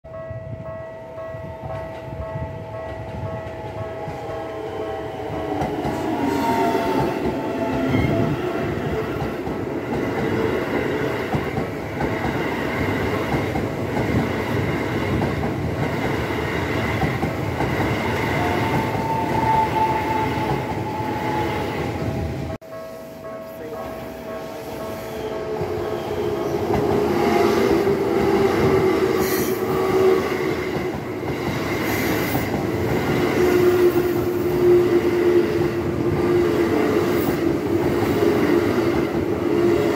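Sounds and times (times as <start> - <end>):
level crossing warning bell: 0.1 - 5.7, 22.6 - 26.7
train rumble and wheel clatter: 0.1 - 39.9.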